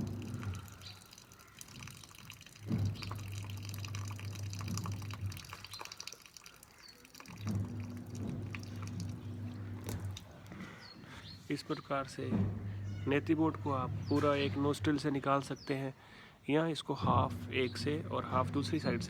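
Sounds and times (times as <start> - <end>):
water dripping and splashing: 0.0 - 10.7
low hum: 2.6 - 5.6, 7.3 - 10.6.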